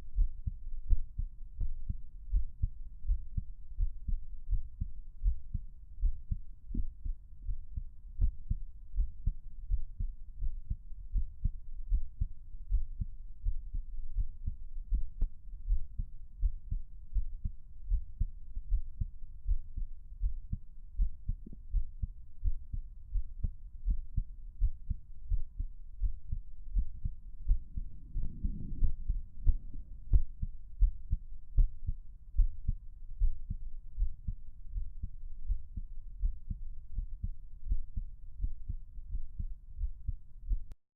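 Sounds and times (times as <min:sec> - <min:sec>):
heartbeat thuds: 0:00.0 - 0:40.8
low noise: 0:20.1 - 0:40.7.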